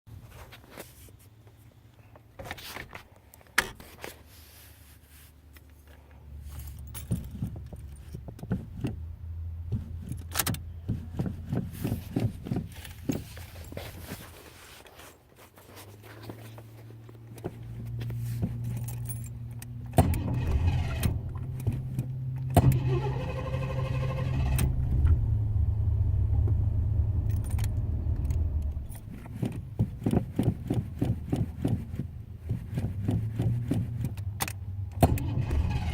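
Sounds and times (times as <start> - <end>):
car engine running: 16.0 - 35.9
car engine cranking: 17.2 - 35.9
engine bangs: 19.7 - 32.0, 32.6 - 35.9.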